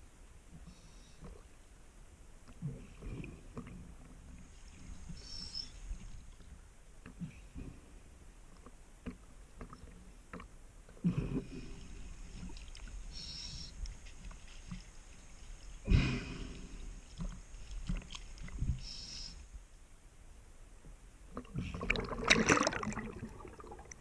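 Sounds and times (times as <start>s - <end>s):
exhaled bubbles rushing: 21.5s - 24.0s.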